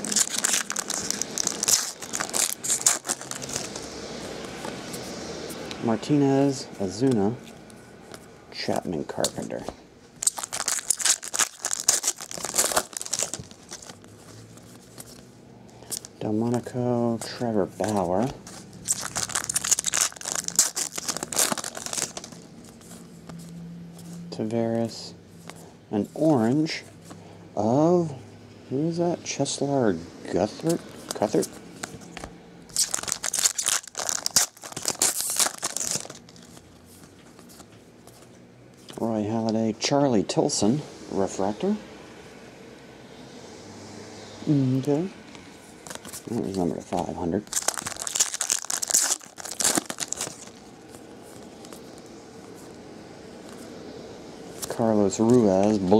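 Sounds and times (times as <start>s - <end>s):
foil wrapper crinkling and tearing: 0.0s - 3.9s, 10.2s - 15.2s, 17.8s - 22.9s, 32.7s - 36.7s, 45.9s - 52.0s.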